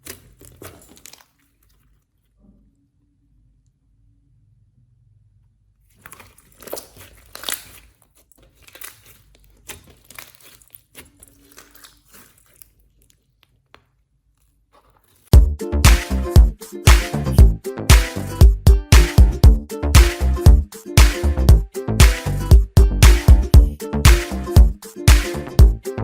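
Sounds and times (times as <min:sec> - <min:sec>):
slime crackling and popping: 0:00.0 - 0:01.8, 0:06.0 - 0:13.6
loud music with strong beat: 0:15.4 - 0:26.0.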